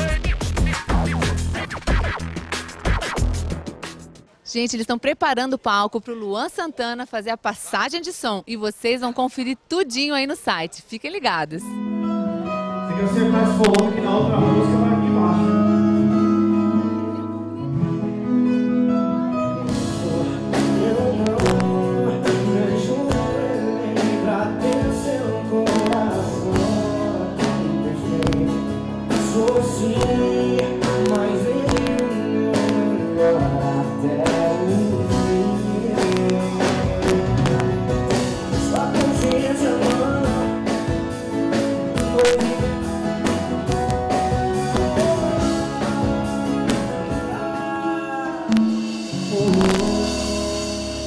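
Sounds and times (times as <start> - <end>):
drums steady beat: 0.0 - 4.2, 19.7 - 47.8, 48.4 - 51.0
guitar: 0.0 - 6.0, 11.2 - 51.0
person singing: 12.7 - 18.8, 19.6 - 51.0.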